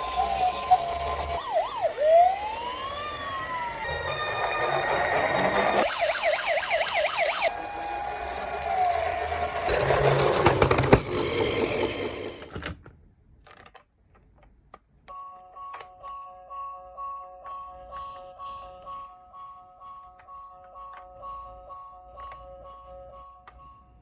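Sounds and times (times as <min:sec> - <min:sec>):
toy siren yelping: 0:00.0 - 0:09.7
toy rattling and whirring: 0:00.0 - 0:12.6.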